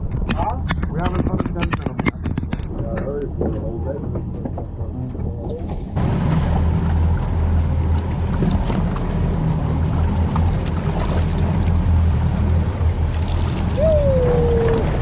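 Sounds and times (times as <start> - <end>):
wind noise: 0.0 - 15.0
boat engines humming: 3.0 - 15.0
water rushing: 5.8 - 15.0.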